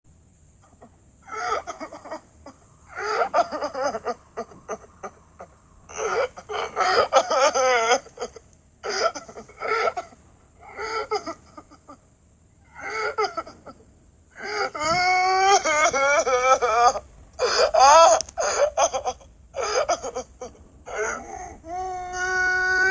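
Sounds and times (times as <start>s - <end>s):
cartoon character sobbing wails: 20.9s - 22.9s.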